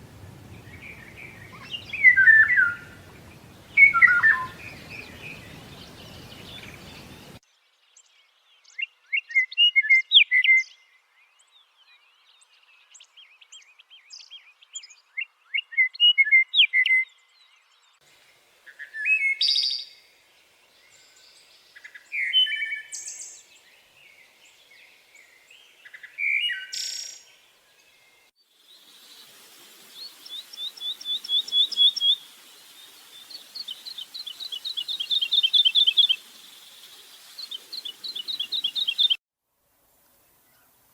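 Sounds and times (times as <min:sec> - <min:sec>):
faint steady hiss: 0:00.0 - 0:08.4, 0:17.3 - 0:40.9
songbirds singing: 0:00.0 - 0:18.0, 0:18.7 - 0:39.2.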